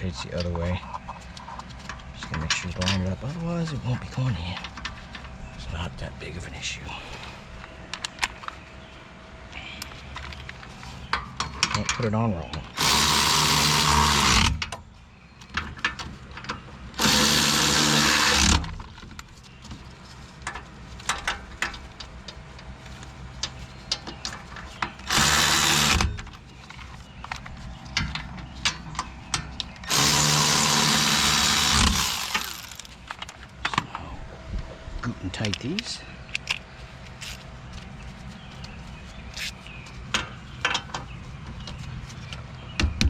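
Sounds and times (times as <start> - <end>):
cordless power tool bursts: 12.7 - 14.7, 17.0 - 18.8, 25.0 - 26.3, 29.8 - 32.9.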